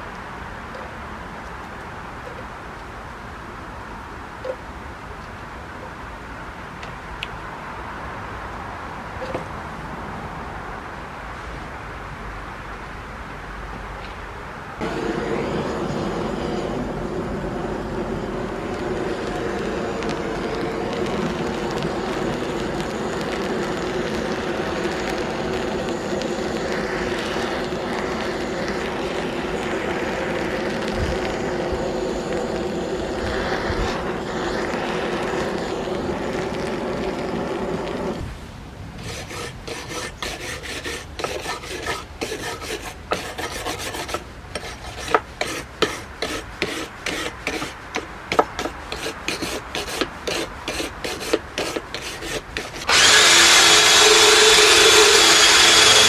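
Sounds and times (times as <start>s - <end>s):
power tool running: 14.8s - 38.2s, 52.6s - 56.0s
loud power tool starting: 14.8s - 38.3s, 52.6s - 56.0s
hand rasping strokes: 39.0s - 56.0s.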